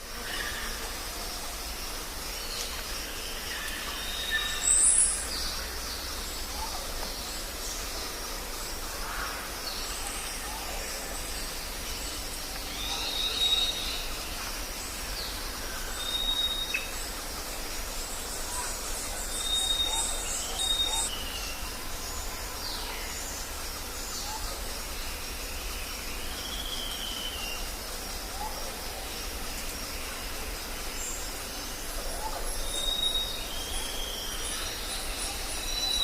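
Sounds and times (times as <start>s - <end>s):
steady background hiss: 0.0s - 36.0s
bird calls: 18.1s - 21.7s.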